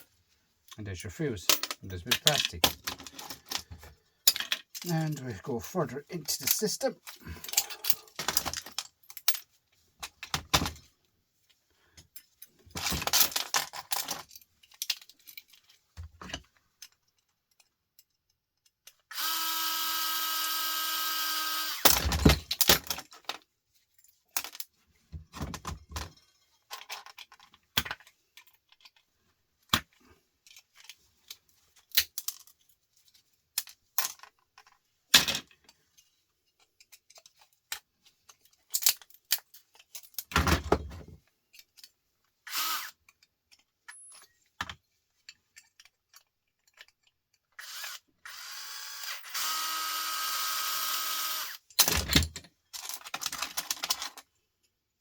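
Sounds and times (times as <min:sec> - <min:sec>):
hand tools clicking and knocking: 0:01.4 - 0:09.2
small power tool whining: 0:19.1 - 0:22.0, 0:47.6 - 0:51.6.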